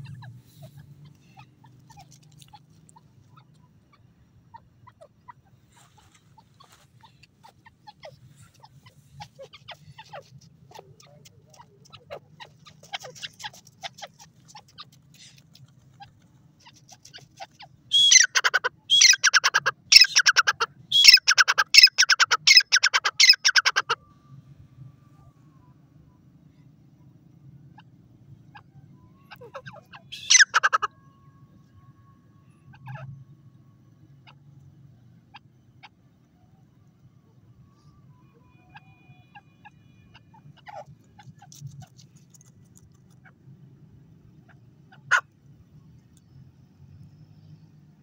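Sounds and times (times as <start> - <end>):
francolin calling: 0.0 - 24.1, 27.0 - 34.5.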